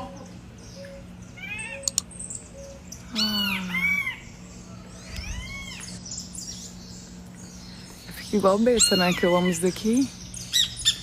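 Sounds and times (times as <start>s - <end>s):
birds calling: 0.0s - 11.0s
steady low hum: 0.0s - 11.0s
sharp clicks: 1.8s - 2.1s.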